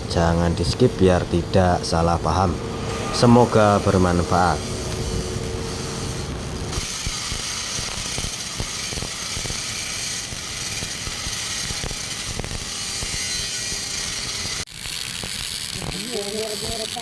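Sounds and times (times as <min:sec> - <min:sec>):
welding arc crackling: 0:04.1 - 0:17.0.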